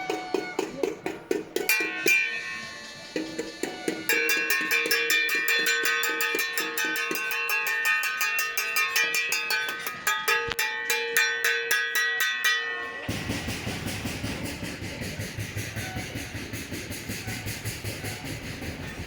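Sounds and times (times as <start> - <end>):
metal blades clanging: 4.1 - 13.2.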